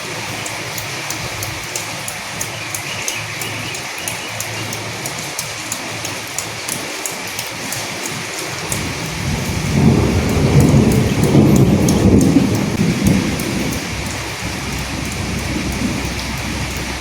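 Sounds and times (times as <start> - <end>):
steady rain: 0.0 - 17.0
thunder rumbling: 8.7 - 17.0.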